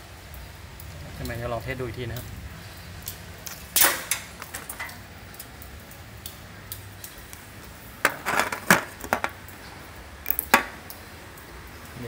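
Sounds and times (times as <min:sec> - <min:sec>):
sharp clicks and scrapes: 0:08.0 - 0:09.4
small hardware clicking: 0:10.2 - 0:10.7.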